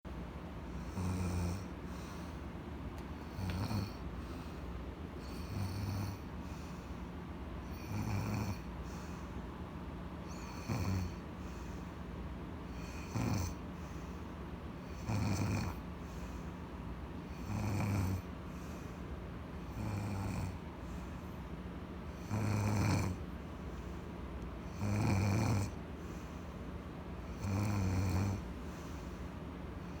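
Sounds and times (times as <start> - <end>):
woman snoring: 0.8 - 2.2, 3.2 - 4.0, 5.2 - 6.3, 7.7 - 8.7, 10.3 - 11.2, 12.7 - 13.6, 14.9 - 15.8, 17.3 - 18.3, 19.7 - 20.6, 22.2 - 23.2, 24.7 - 25.8, 27.3 - 28.5.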